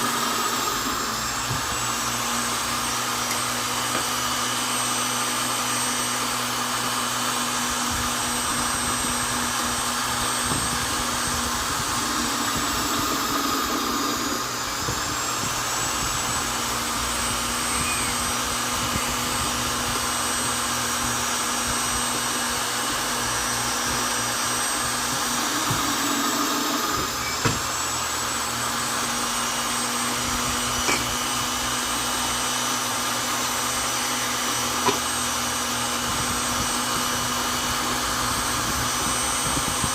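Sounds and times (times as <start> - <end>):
electric drill drilling into wood: 0.0 - 39.9.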